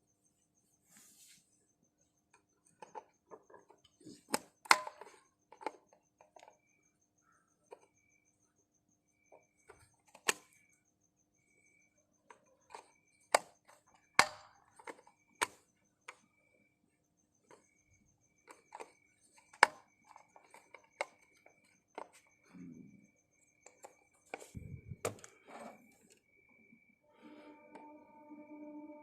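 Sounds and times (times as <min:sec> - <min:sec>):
tools clicking and knocking: 0:02.3 - 0:06.6.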